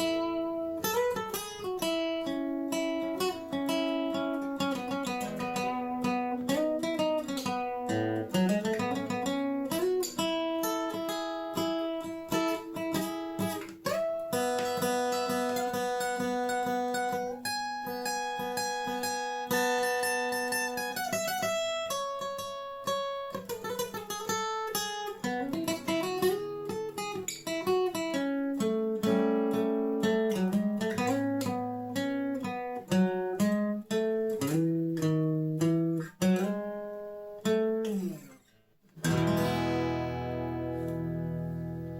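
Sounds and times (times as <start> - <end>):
acoustic guitar plucked melody: 0.0 - 41.9.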